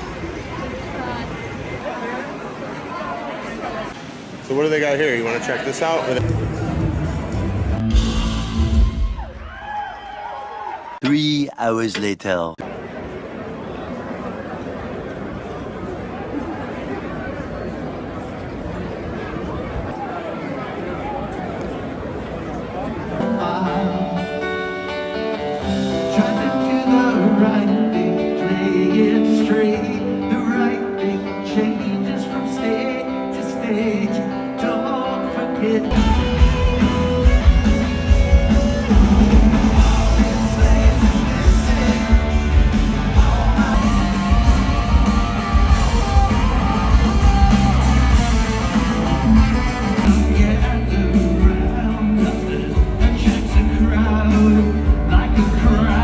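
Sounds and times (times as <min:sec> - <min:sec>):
guitar: 0:06.0 - 0:09.6, 0:21.2 - 0:56.0
bass and drums: 0:06.2 - 0:09.9, 0:35.9 - 0:56.0
person singing: 0:23.2 - 0:24.6, 0:25.6 - 0:37.8, 0:38.5 - 0:56.0.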